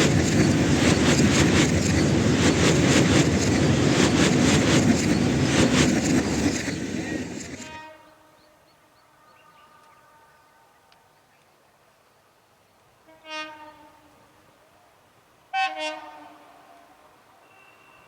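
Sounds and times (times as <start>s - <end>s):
train wheels clattering over rail joints: 0.0s - 7.7s
faint horn-like tones: 7.6s - 10.9s, 13.0s - 14.5s, 15.5s - 18.0s.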